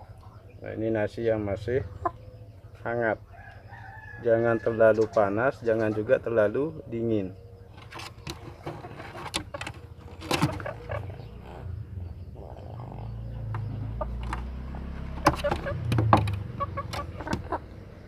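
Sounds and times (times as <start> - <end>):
rooster being handled: 7.8 - 11.0, 13.5 - 17.7.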